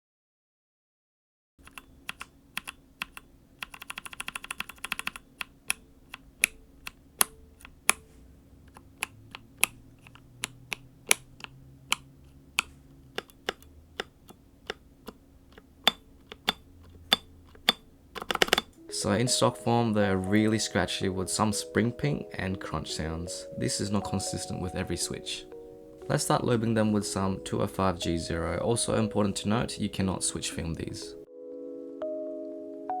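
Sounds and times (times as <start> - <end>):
mechanical keyboard keystrokes: 1.6 - 8.1, 8.7 - 18.8.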